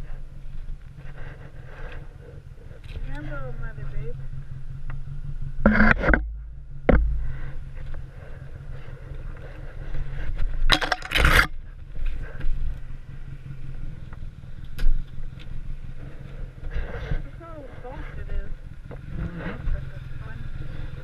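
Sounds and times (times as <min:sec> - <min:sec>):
vehicle engine idling: 0:00.0 - 0:21.0
loud scraping bursts: 0:05.6 - 0:11.6.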